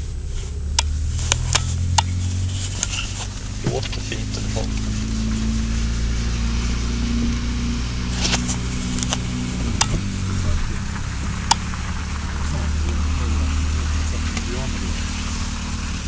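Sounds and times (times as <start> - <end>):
car engine running: 0.0 - 16.0
sharp clicks: 0.7 - 2.2, 8.2 - 13.7.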